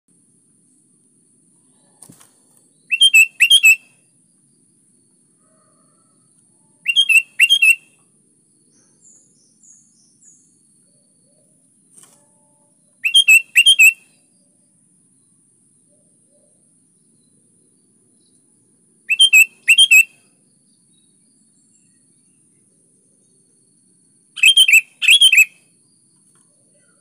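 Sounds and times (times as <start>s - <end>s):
faint high chirps: 1.6s - 18.5s, 19.1s - 27.0s
bird singing whistled phrases: 2.9s - 3.9s, 6.8s - 8.0s, 13.0s - 14.1s, 19.1s - 20.2s, 24.4s - 25.6s.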